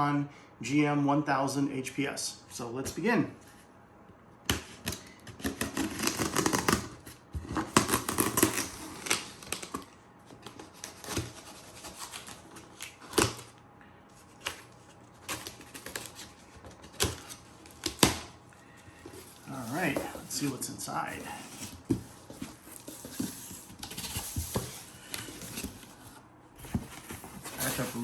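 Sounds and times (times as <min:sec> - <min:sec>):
cardboard scraping and rustling: 0:05.4 - 0:13.5, 0:14.2 - 0:18.3, 0:18.9 - 0:28.0.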